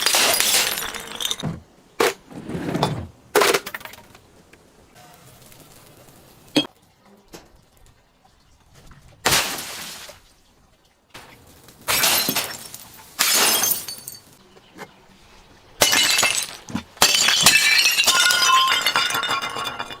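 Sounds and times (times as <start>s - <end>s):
glass shards tinkling: 0.0s - 1.5s, 11.9s - 14.4s, 15.8s - 20.0s
glass bottles shattering: 0.0s - 2.2s, 11.9s - 14.4s, 15.8s - 20.0s.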